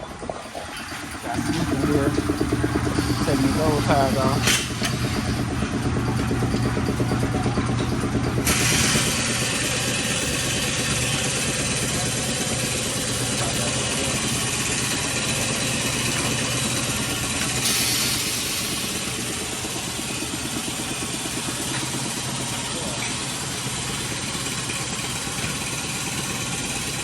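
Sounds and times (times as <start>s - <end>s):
machinery low hum: 0.0s - 26.5s
machinery hiss: 8.4s - 24.5s.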